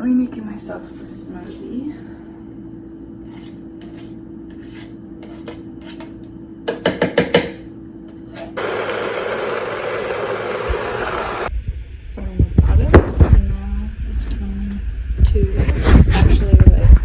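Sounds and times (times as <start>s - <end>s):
blender running: 8.6s - 11.5s.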